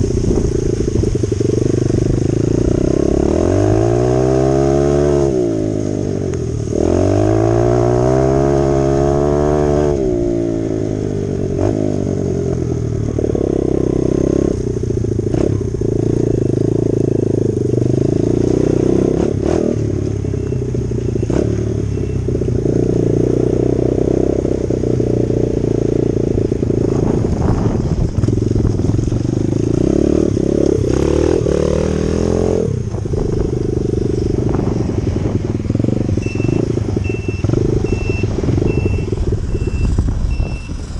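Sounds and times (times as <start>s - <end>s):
dirt bike engine revving: 0.0s - 10.8s, 21.2s - 40.9s.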